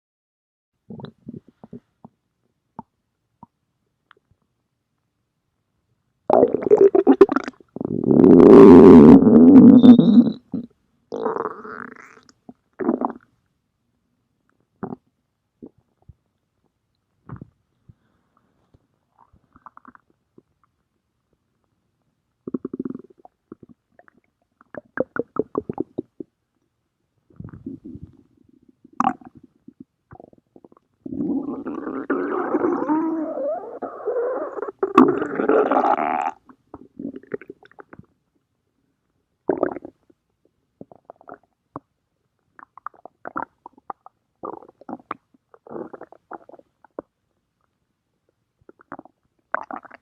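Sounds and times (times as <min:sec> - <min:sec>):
stomach growling: 0:00.9 - 0:02.2, 0:27.3 - 0:38.1, 0:42.6 - 0:47.1.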